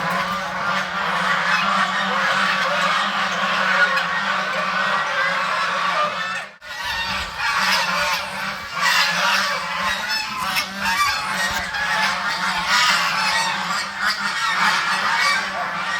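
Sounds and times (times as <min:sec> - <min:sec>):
ducks quacking: 0:00.0 - 0:15.9.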